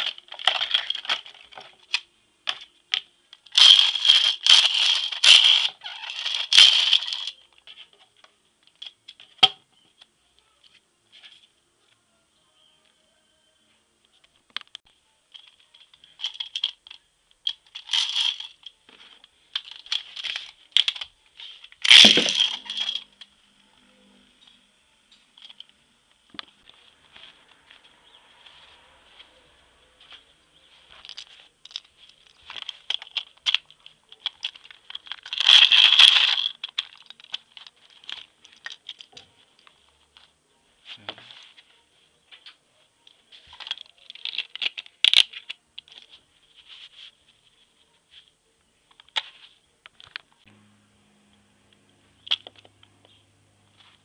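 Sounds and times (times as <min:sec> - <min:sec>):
plastic packaging rustling: 0:00.0 - 0:02.6, 0:03.4 - 0:07.7, 0:30.9 - 0:39.8
faint high whine: 0:50.4 - 0:54.0.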